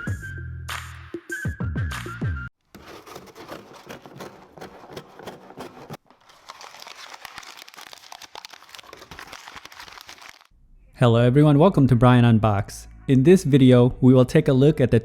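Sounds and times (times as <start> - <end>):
packaging crinkling: 2.6 - 10.5.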